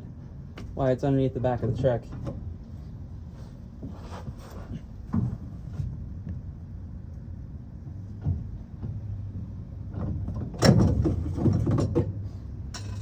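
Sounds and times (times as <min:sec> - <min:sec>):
steady low hum: 0:00.0 - 0:13.0
metal hardware knocks and rattles: 0:09.9 - 0:12.2.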